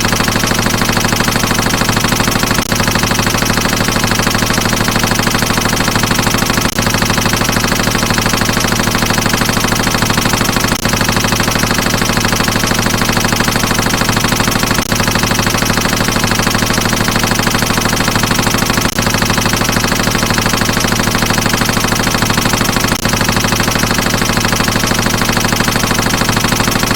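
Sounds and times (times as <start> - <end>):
machine gun automatic fire: 0.0 - 26.9.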